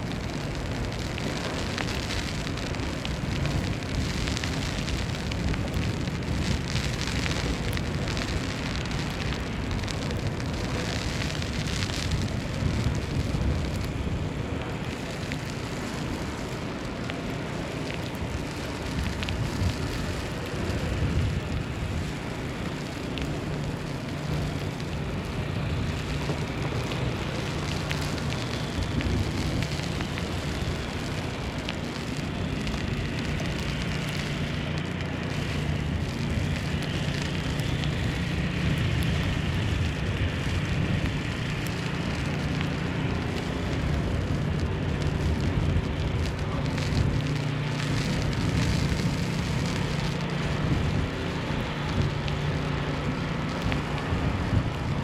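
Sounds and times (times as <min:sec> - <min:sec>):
hiss of falling wet snow: 0:00.0 - 0:55.0
low wind rumble: 0:00.0 - 0:55.0.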